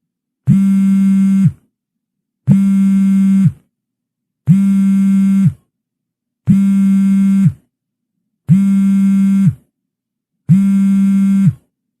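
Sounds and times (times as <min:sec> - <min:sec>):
phone vibration buzz: 0:00.5 - 0:01.7, 0:02.5 - 0:03.7, 0:04.5 - 0:05.7, 0:06.5 - 0:07.7, 0:08.5 - 0:09.7, 0:10.5 - 0:11.7.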